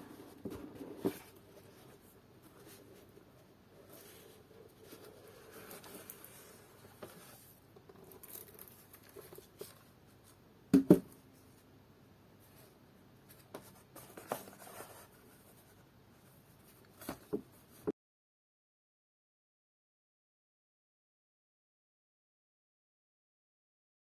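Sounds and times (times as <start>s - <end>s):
soft rustling and scraping: 0.0s - 10.4s, 12.4s - 17.9s.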